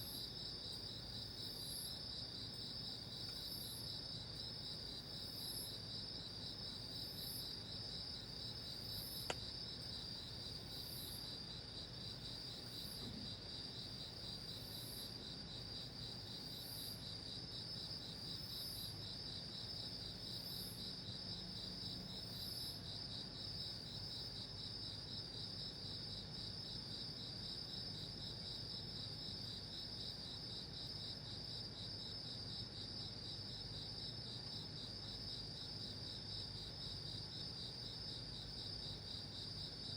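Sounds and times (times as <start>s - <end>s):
crickets trilling: 0.0s - 39.9s
faint click: 9.2s - 9.4s.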